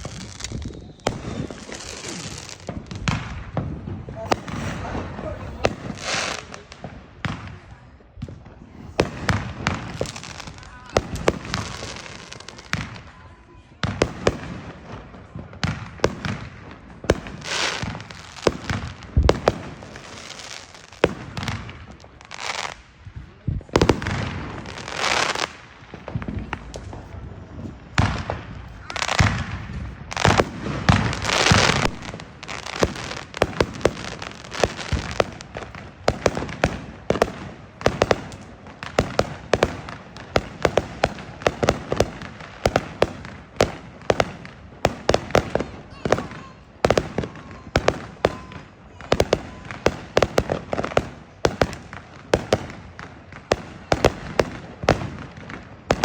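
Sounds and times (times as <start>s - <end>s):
rapid sharp firework pops: 0.0s - 5.0s, 15.4s - 22.8s, 23.7s - 27.2s, 27.9s - 56.0s
fireworks bangs and crackling: 0.0s - 56.0s.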